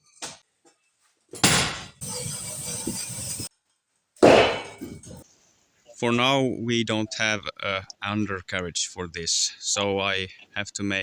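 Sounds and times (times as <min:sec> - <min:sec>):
metal ringing clank: 0:04.2 - 0:05.2.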